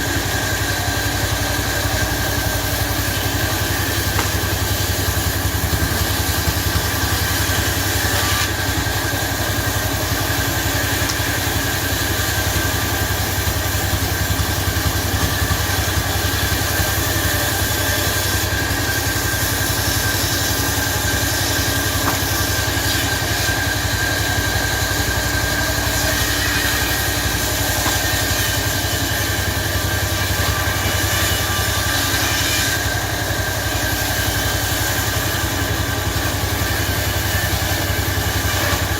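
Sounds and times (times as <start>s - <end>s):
chainsaw engine running: 0.0s - 38.9s.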